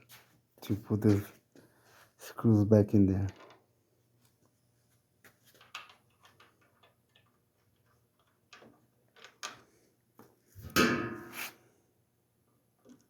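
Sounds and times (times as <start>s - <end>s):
light clicks of parts and screws: 5.2s - 10.4s.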